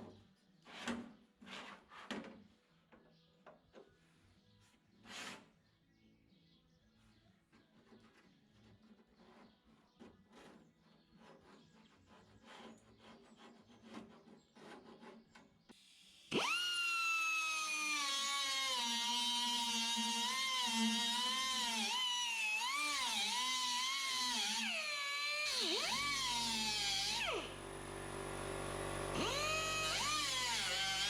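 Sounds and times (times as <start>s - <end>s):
power tool high-pitched whine: 15.8s - 31.0s.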